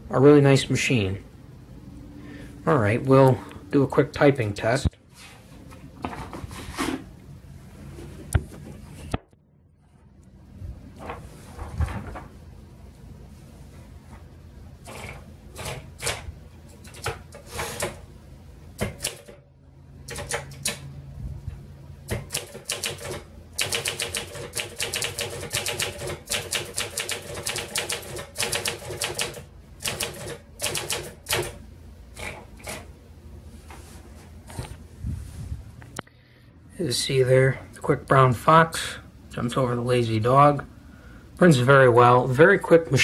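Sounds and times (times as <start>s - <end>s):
typewriter keystrokes: 20.1s - 20.8s, 22.1s - 31.6s.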